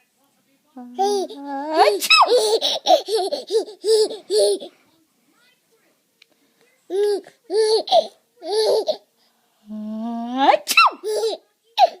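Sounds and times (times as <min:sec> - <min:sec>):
baby laughing: 0:01.0 - 0:04.8, 0:06.9 - 0:09.1, 0:10.6 - 0:12.0
adult mock sneeze: 0:10.5 - 0:11.0.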